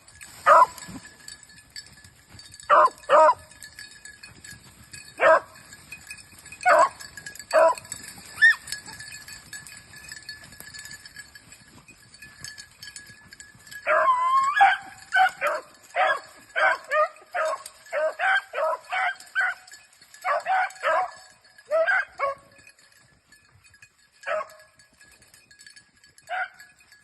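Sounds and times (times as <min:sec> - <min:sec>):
dogs baying: 0:02.7 - 0:03.4, 0:06.6 - 0:08.7, 0:13.8 - 0:22.5.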